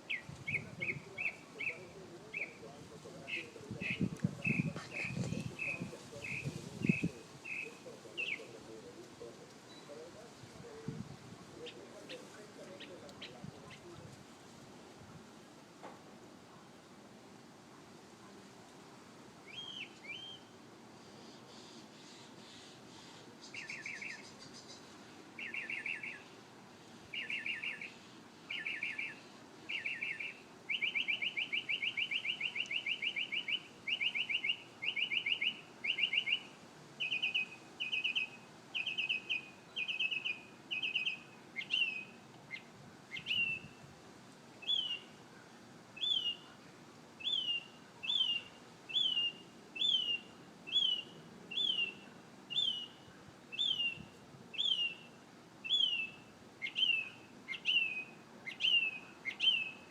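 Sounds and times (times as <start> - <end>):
songbird singing trills and whistles: 0.0 - 2.6, 3.3 - 8.5, 9.7 - 10.0, 19.4 - 20.5, 23.4 - 26.4, 27.1 - 43.8, 44.6 - 45.2, 46.0 - 46.6, 47.2 - 59.9.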